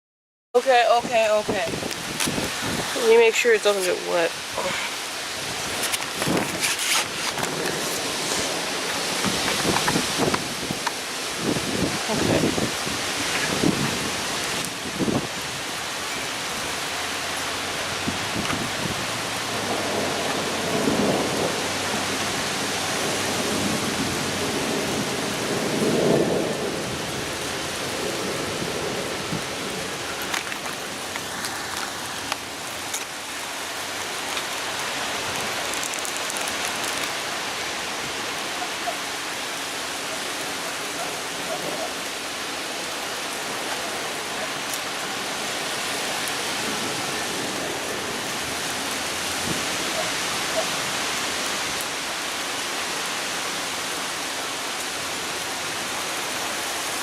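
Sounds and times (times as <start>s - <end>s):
heavy rain pouring: 0.6s - 57.0s
thunder rumbling: 1.0s - 32.3s.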